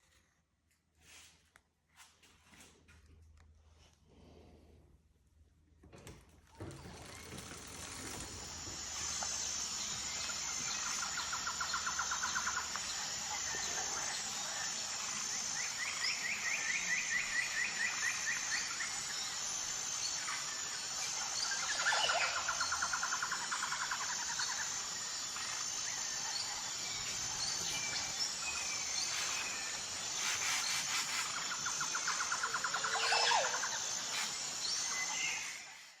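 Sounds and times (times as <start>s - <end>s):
birds singing: 8.6s - 35.9s.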